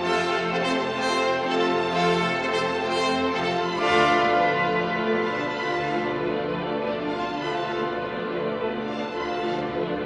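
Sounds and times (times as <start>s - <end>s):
orchestral music with strings: 0.0s - 10.0s.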